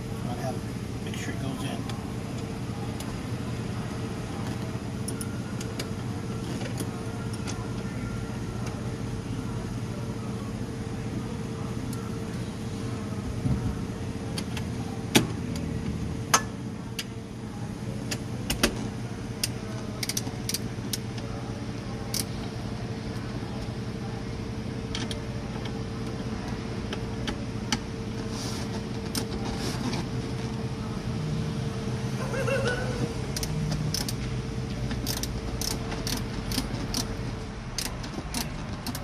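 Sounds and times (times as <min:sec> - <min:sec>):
steady electrical hum: 0:00.0 - 0:39.0
metallic clicks of parts and tools: 0:33.3 - 0:34.3, 0:34.9 - 0:37.1, 0:37.8 - 0:39.0.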